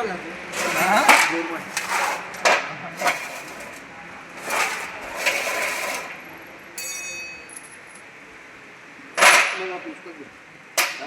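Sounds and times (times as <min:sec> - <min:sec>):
rough scraping and rustling: 0:00.5 - 0:06.4
metal part ringing: 0:06.8 - 0:08.0.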